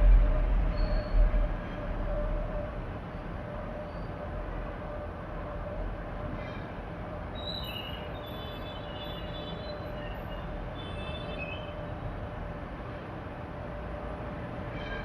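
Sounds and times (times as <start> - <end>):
faint high whistles: 7.4 - 8.6.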